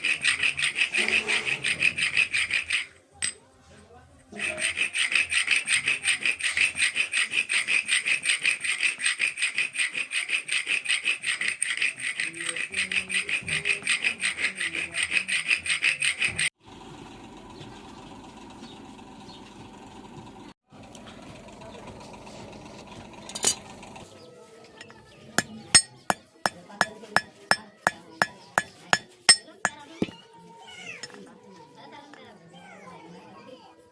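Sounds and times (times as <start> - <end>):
metal file rasping on steel: 0.0 - 3.0, 4.4 - 16.5, 24.8 - 30.2.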